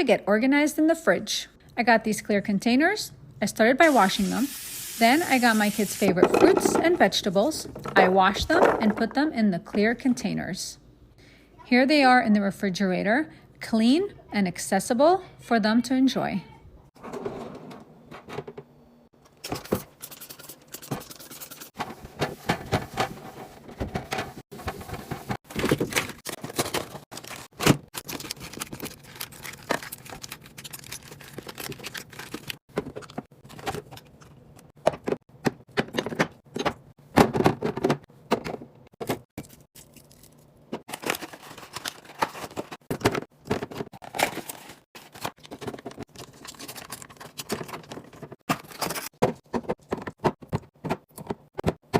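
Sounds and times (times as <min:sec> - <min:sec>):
food containers clicking and scraping: 0:06.1 - 0:09.2, 0:21.6 - 0:39.3, 0:40.7 - 0:51.9
packaging rustling: 0:24.6 - 0:34.1, 0:40.9 - 0:49.2.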